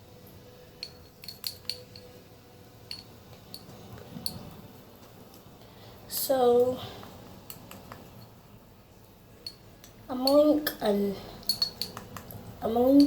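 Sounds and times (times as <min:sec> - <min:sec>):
comb clicking against container: 0:00.8 - 0:02.1, 0:07.0 - 0:08.3, 0:11.4 - 0:13.0.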